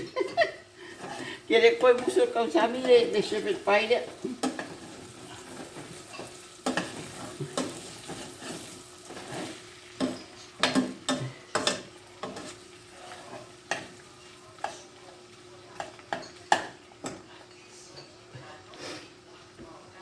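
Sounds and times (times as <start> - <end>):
meat sizzling in a frying pan: 0.0 - 20.0
utensil scraping and knocking pan: 4.4 - 14.0.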